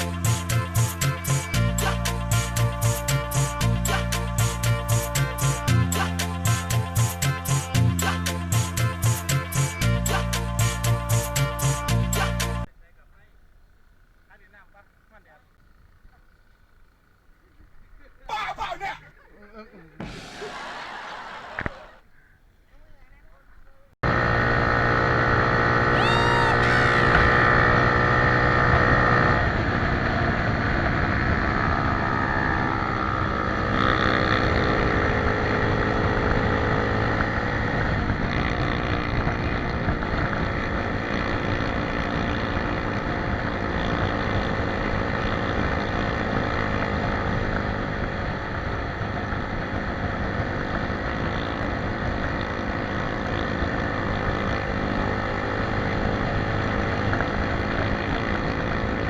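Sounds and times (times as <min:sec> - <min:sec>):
motorcycle engine droning: 0:12.6 - 0:18.3, 0:20.0 - 0:22.4, 0:23.4 - 0:59.0.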